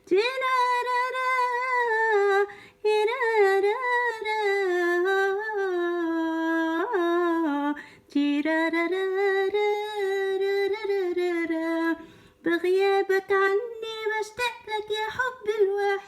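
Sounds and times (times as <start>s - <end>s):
woman singing wordless melody: 0.0s - 16.0s.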